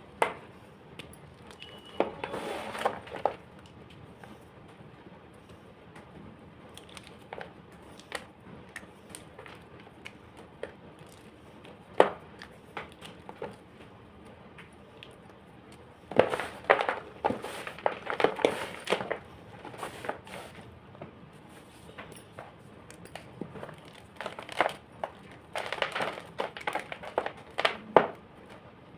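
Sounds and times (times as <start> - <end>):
chalk crunching and crumbling: 16.1 - 20.6.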